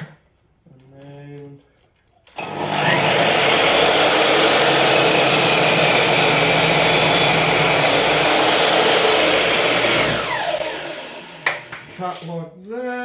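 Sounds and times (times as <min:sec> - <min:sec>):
mitre saw whine: 0:02.4 - 0:12.0.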